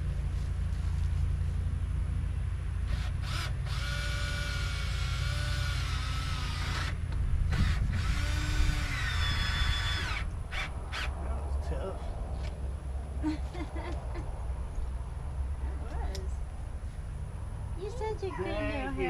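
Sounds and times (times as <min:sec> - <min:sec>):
power drill running: 0:02.9 - 0:11.1.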